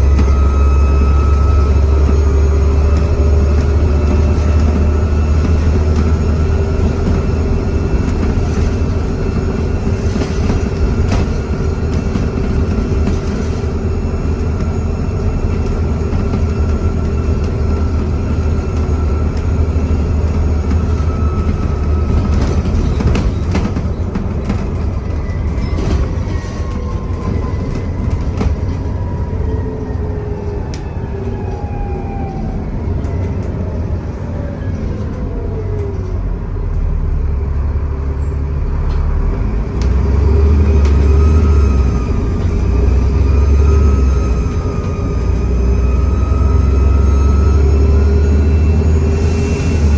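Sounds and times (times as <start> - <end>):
turbocharger whistle: 0.0 - 3.2
bus engine drone: 0.0 - 49.9.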